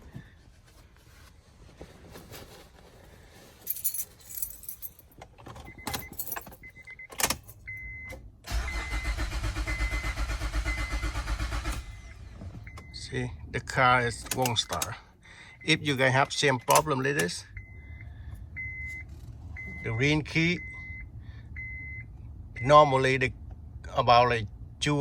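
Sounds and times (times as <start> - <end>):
keys jingling: 3.6 - 7.7
starter cranking engine: 8.5 - 12.0.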